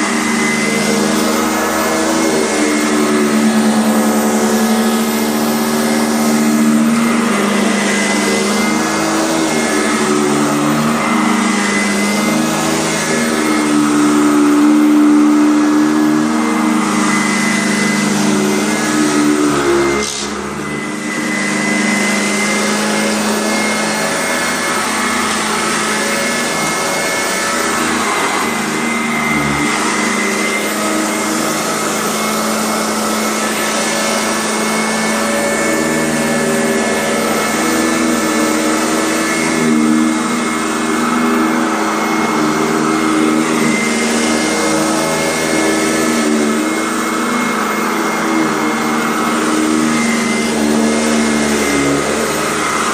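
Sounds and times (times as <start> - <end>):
vacuum cleaner motor whine: 0.0 - 52.9.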